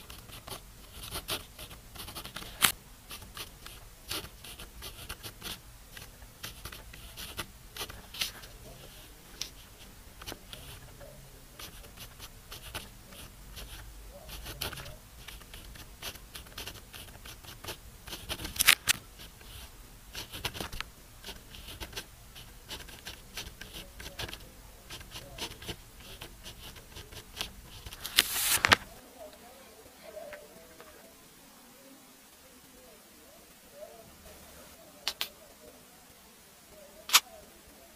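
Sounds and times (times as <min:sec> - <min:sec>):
pen nib scratching on paper: 0:00.0 - 0:28.9.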